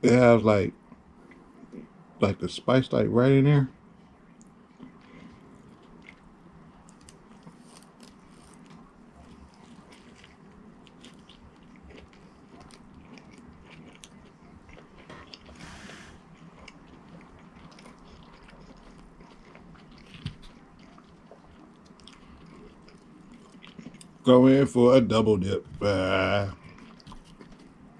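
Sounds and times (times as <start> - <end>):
chewing and crunching food: 0.8 - 2.0, 4.0 - 27.9.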